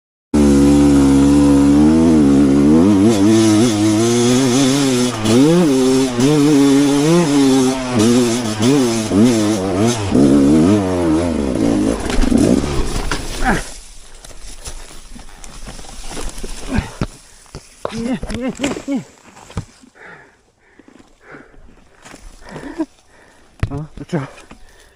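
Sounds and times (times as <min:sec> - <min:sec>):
motorcycle engine revving: 0:00.4 - 0:13.8.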